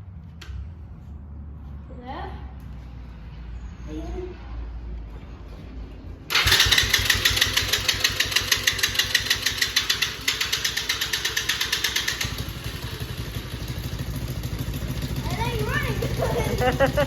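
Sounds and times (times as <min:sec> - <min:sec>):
atv engine starting and puttering: 0:06.3 - 0:17.0.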